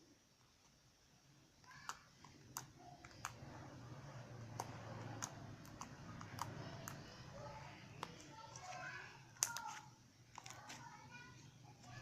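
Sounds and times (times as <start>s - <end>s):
sharp clicks and small pops: 1.6s - 11.0s.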